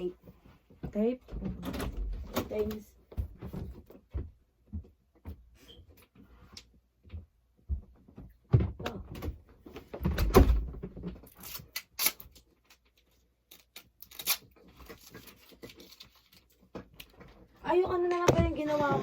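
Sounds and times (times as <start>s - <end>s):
handling knocks and thumps: 0.3s - 5.5s, 7.0s - 11.3s, 16.7s - 19.0s.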